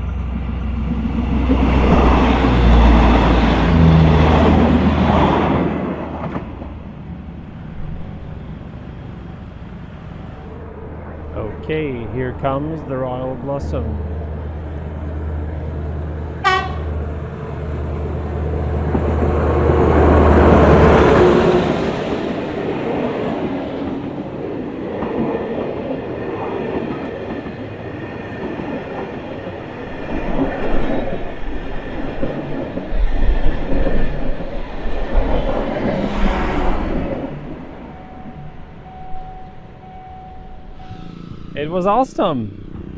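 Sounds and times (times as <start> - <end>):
locomotive engine rumble: 0.0 - 22.8
train horn toot: 16.4 - 17.0.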